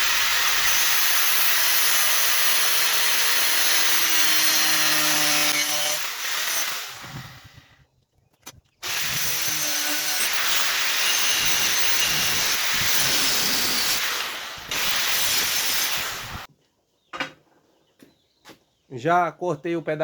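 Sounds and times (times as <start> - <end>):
angle grinder cutting steel: 0.0 - 7.5, 8.8 - 16.5.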